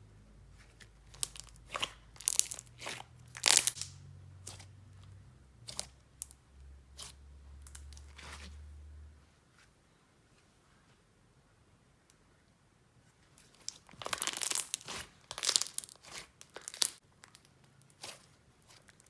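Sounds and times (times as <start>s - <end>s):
slime squished by hand: 1.0s - 4.7s, 5.6s - 6.4s, 13.5s - 19.0s.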